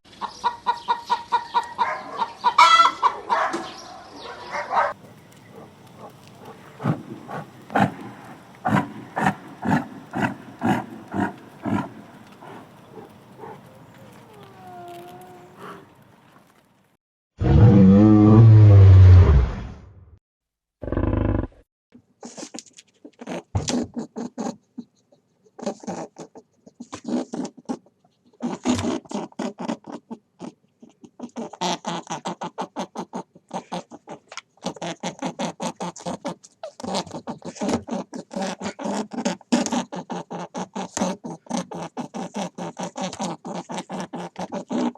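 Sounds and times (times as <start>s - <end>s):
big cat grunting calls: 5.5s - 15.9s.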